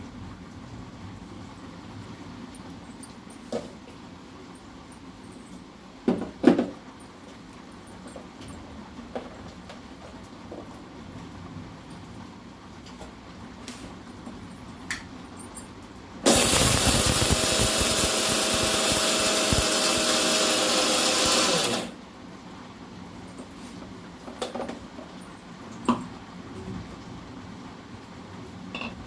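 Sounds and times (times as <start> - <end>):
mixer grinder grinding: 16.3 - 22.0.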